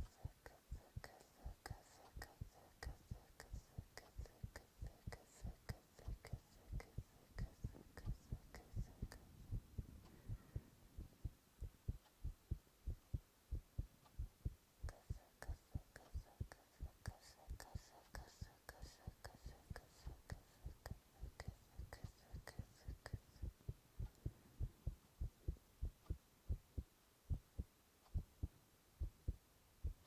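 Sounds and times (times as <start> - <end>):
heartbeat thumps: 3.8 - 17.1, 19.6 - 30.0.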